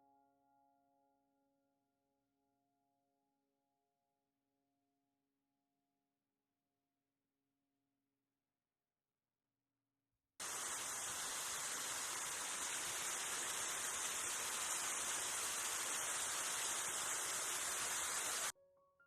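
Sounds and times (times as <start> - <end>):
waterfall rushing: 10.4 - 18.5.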